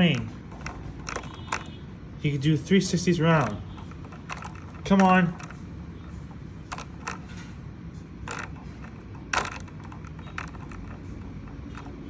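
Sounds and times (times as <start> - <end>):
sharp clicks: 0.0 - 1.8, 3.3 - 5.6
plastic toy creaking and clicking: 0.0 - 12.0.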